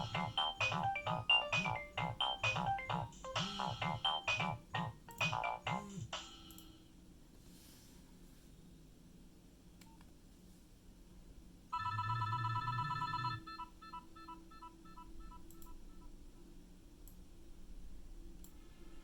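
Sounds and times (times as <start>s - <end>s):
phone ringtone tone and beeps: 0.0s - 6.2s, 11.8s - 16.1s.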